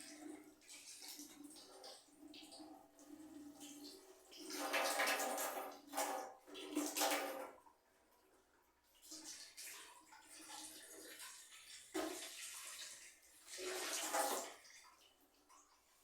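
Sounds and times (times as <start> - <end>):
water running from a tap: 9.0 - 15.1.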